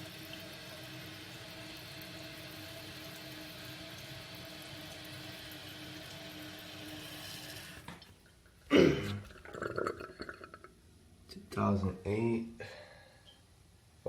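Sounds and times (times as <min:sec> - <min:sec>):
toilet fill valve hissing: 0:00.0 - 0:07.9.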